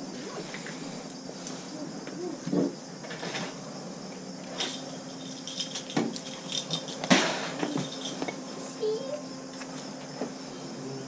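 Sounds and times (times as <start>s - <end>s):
objects clattering: 4.4s - 8.6s.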